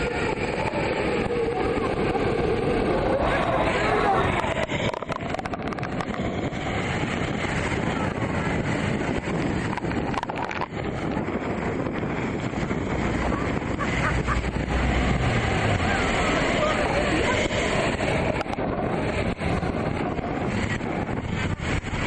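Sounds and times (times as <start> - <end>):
deep rumble: 0.0 - 22.0
motorboat engine: 0.0 - 22.0
wind buffeting microphone: 0.0 - 22.0
rushing whitewater: 9.6 - 22.0.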